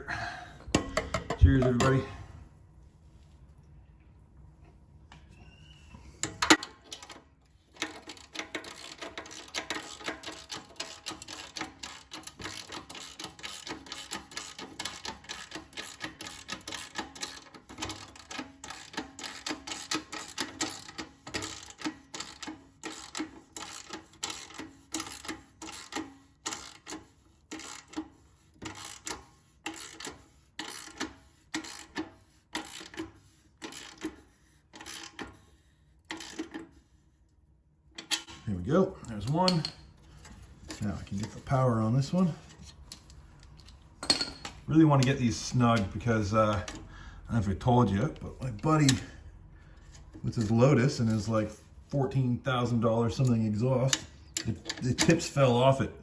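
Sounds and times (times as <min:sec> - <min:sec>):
socket ratchet clicking: 0:07.8 - 0:34.2.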